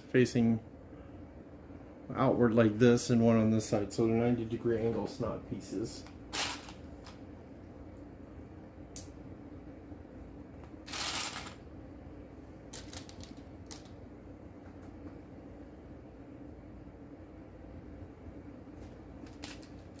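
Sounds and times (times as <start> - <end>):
low steady hum: 0.0 - 20.0
plastic pieces clicking: 12.7 - 14.0, 19.2 - 20.0.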